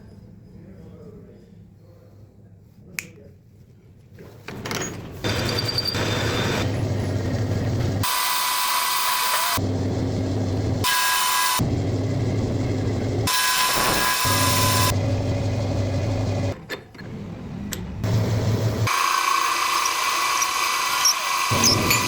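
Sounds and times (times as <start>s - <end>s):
metal lathe motor hum: 5.3s - 22.0s
metal cutting hiss and whine: 10.6s - 16.4s, 18.1s - 22.0s.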